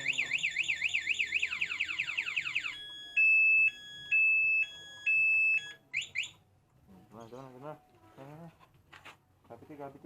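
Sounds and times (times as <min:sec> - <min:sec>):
long high alarm beeps: 0:00.0 - 0:06.4.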